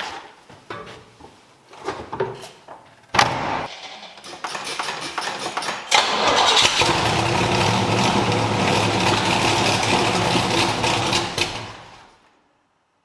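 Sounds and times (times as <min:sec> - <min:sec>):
car engine running loudly: 0:06.8 - 0:11.9.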